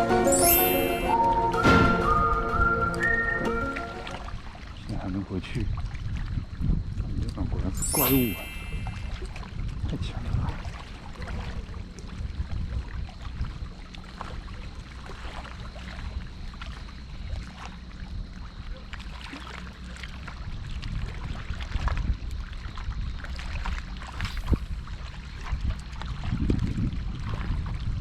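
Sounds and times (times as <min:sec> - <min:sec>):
wind on microphone: 0:05.6 - 0:10.8, 0:11.4 - 0:13.7, 0:23.0 - 0:28.0
water splashing and lapping: 0:07.8 - 0:28.0.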